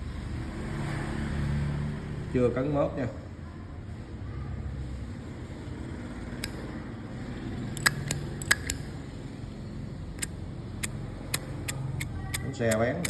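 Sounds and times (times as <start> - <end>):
lighter clicks: 7.8 - 8.9.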